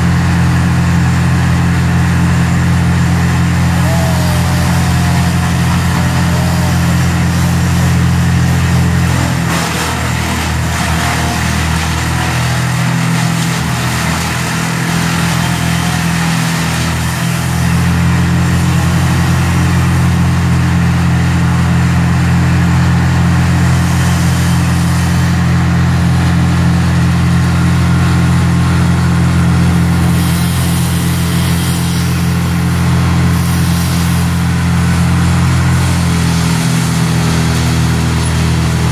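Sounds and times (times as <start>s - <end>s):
large engine humming: 0.0s - 38.9s.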